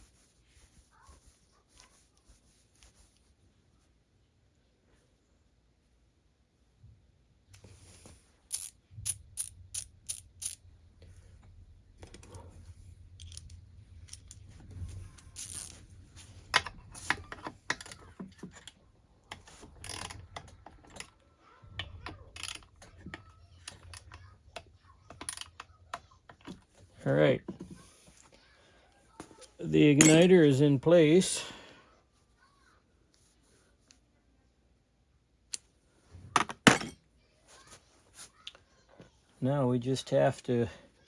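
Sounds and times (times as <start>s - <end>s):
ratchet wrench clicking: 8.5s - 10.6s.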